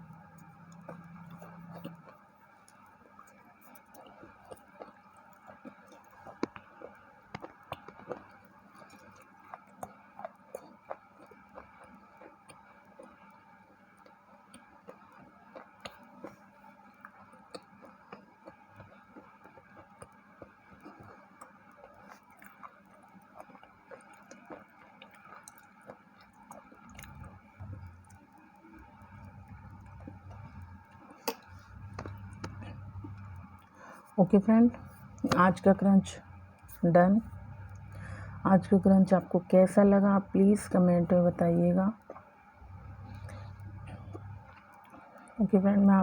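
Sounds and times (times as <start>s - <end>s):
crisp chewing crunches: 0.3s - 34.1s.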